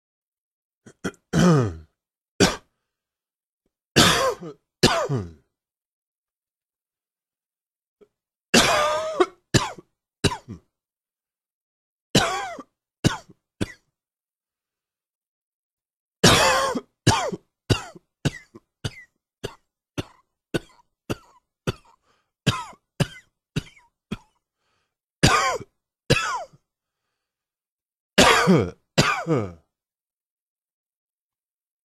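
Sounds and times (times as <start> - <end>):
person coughing: 0.9 - 2.7, 4.0 - 5.4, 8.5 - 10.7, 12.2 - 13.9, 16.2 - 24.4, 25.2 - 26.6, 28.2 - 29.7.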